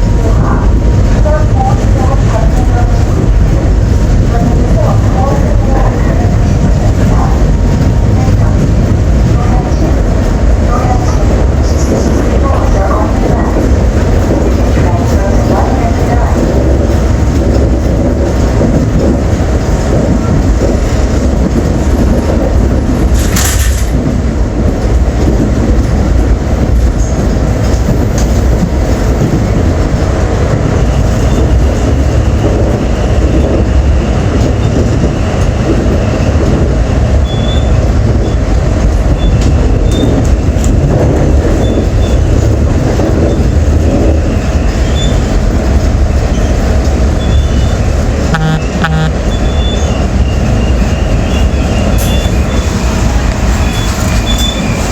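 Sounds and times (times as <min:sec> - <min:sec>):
subway train rumbling on rails: 0:00.0 - 0:54.9
wheels squealing: 0:46.2 - 0:48.0, 0:49.2 - 0:54.9.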